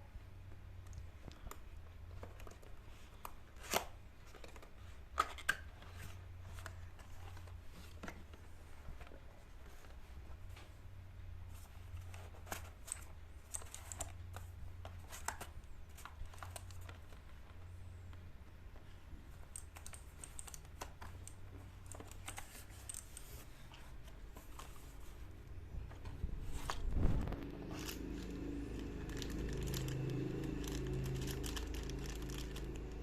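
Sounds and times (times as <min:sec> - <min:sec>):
steady low hum: 0:05.9 - 0:33.0
mechanical keyboard keys clicking: 0:29.0 - 0:33.0.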